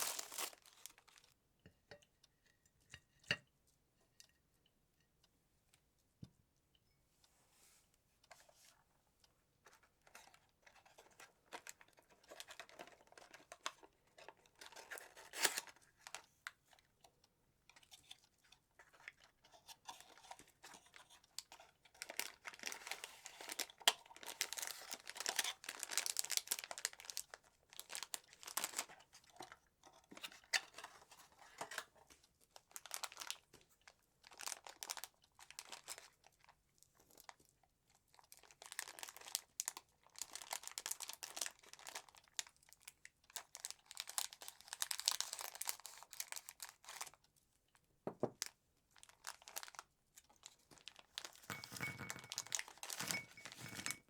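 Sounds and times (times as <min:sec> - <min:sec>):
nuts crunching and rustling: 0:00.0 - 0:01.3, 0:22.0 - 0:28.9.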